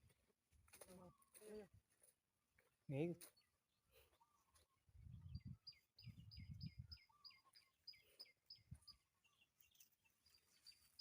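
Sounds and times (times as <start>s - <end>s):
small bird chirping: 3.3s - 11.0s.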